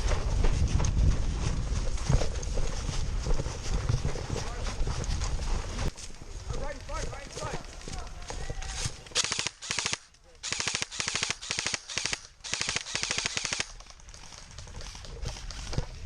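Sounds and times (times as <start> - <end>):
airsoft gun full-auto bursts: 9.2 - 13.8.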